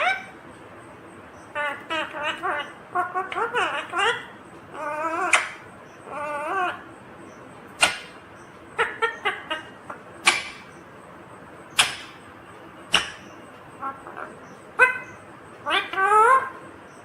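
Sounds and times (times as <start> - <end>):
parakeet sharp squawks: 0.0 - 0.4, 1.5 - 6.8, 7.8 - 8.2, 8.8 - 10.8, 11.7 - 12.2, 12.9 - 16.6
parakeet warbling chatter: 0.0 - 0.4, 1.3 - 10.9, 12.9 - 17.0.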